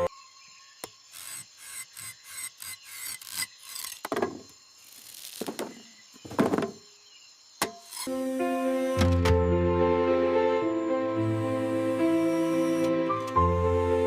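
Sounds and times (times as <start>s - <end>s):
rasping scraping strokes: 1.1s - 4.0s.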